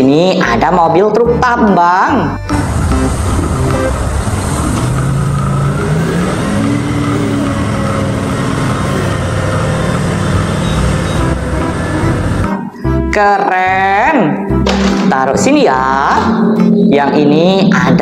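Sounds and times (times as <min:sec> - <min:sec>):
truck engine revving: 0:02.3 - 0:13.2.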